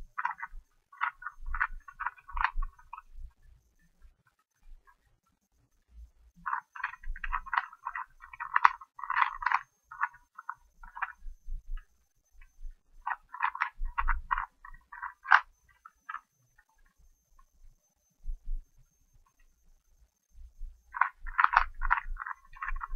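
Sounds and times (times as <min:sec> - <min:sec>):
puzzle cube clicking as it turns: 0:00.0 - 0:03.1, 0:06.5 - 0:11.9, 0:13.0 - 0:16.3, 0:20.9 - 0:22.9.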